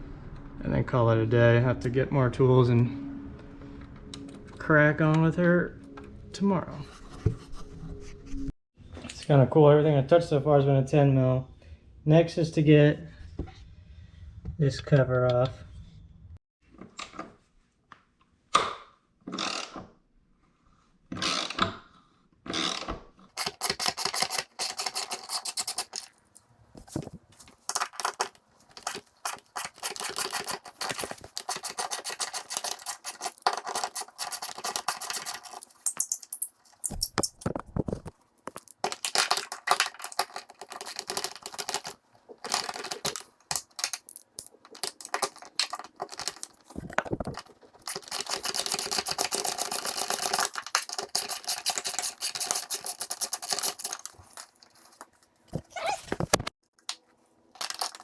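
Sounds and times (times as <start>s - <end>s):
socket ratchet clicking: 27.7s - 37.0s, 38.5s - 54.2s.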